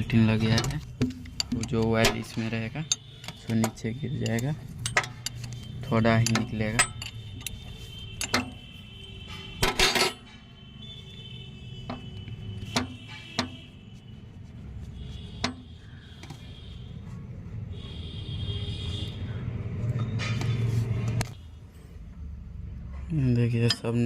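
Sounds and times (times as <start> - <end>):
spanner clinking on metal nuts: 0.0 - 8.7, 9.3 - 10.5, 23.5 - 24.0
metal rattling: 0.0 - 10.6.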